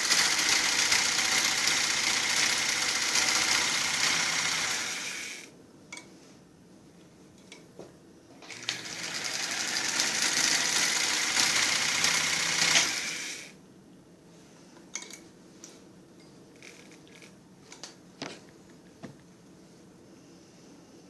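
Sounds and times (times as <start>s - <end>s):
sewing machine running: 0.0s - 5.5s, 8.5s - 13.5s.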